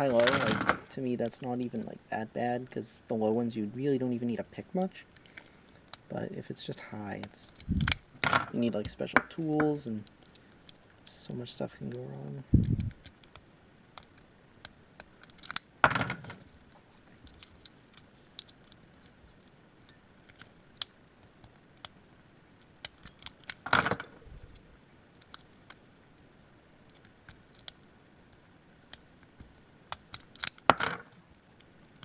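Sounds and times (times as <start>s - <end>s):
lock picks clicking: 15.0s - 15.7s, 29.9s - 30.8s.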